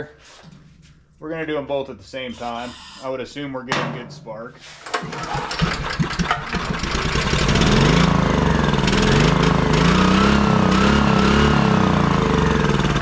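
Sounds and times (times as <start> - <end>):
generator engine starting and running: 4.8 - 13.0.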